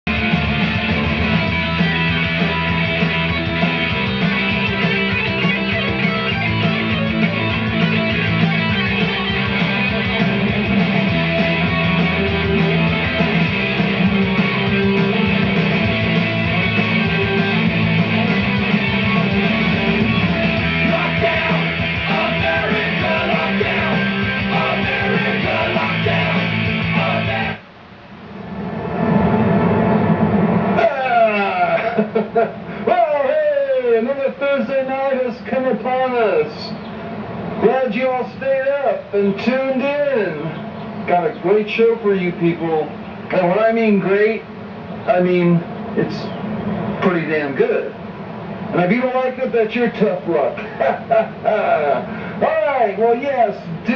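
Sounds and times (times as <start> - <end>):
guitar-driven rock music: 0.1 - 27.6.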